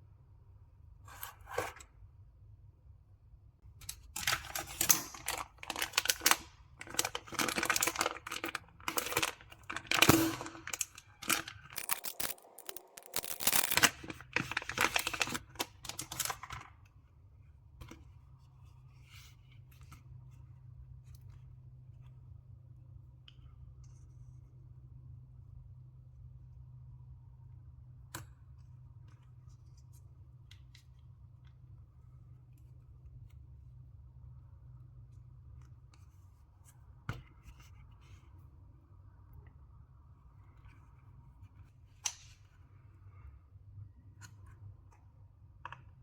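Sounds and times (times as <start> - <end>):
hands scraping and clicking computer parts: 10.7 - 14.1.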